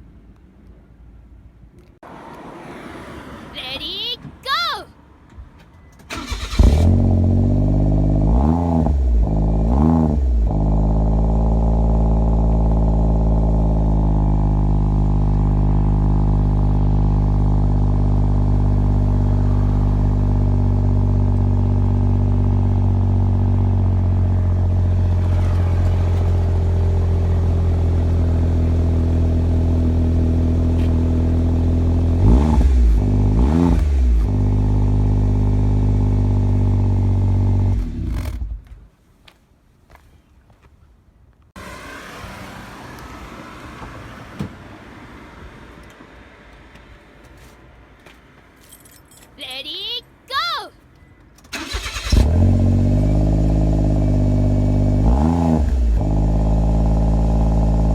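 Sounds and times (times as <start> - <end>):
car engine revving and idling: 6.1 - 38.7, 41.6 - 47.1, 51.6 - 57.9.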